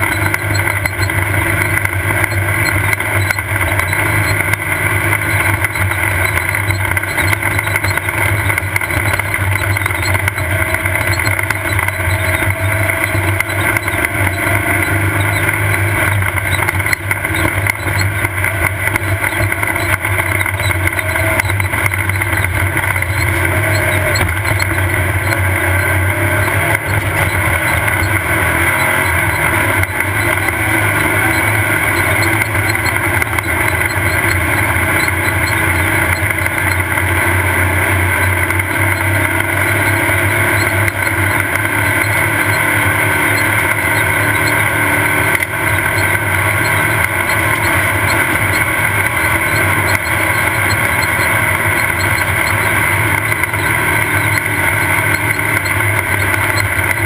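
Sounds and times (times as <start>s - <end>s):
race car engine running: 0.0s - 57.0s
ride noise: 0.0s - 57.0s.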